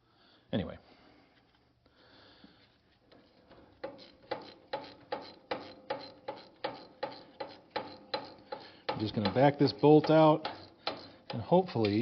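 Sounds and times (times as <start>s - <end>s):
ratchet wrench clicking: 3.1s - 9.4s, 10.0s - 12.0s.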